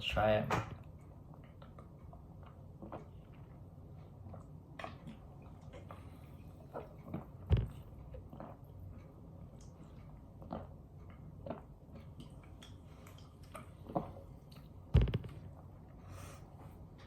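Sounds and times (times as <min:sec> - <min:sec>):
thump: 0:07.5 - 0:07.8, 0:14.9 - 0:15.3.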